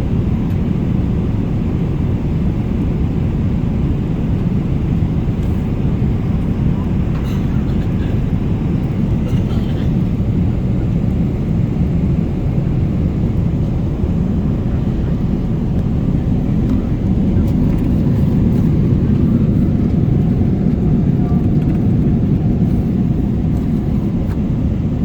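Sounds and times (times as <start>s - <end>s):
moving vehicle rumbling: 5.5s - 24.7s.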